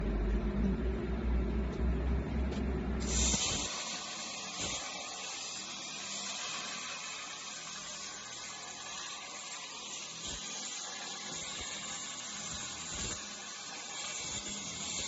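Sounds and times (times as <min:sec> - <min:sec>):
low mechanical rumble: 0:00.0 - 0:03.7
plasma torch hissing: 0:03.0 - 0:15.0.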